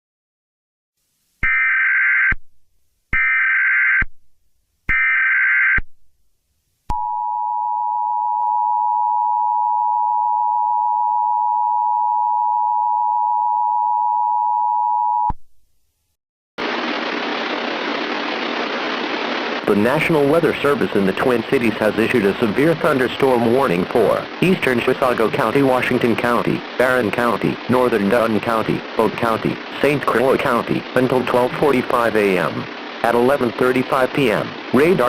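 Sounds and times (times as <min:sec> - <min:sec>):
warbling data bursts: 0:19.7 - 0:35.0.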